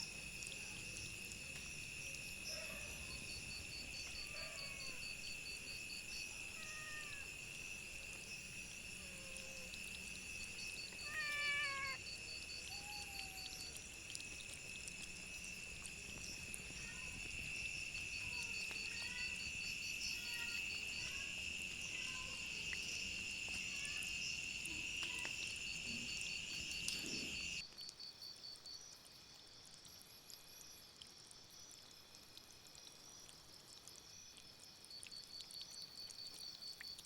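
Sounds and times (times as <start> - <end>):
insects droning: 0.0 - 37.0
rapid pulsed insect chirp: 0.0 - 37.0.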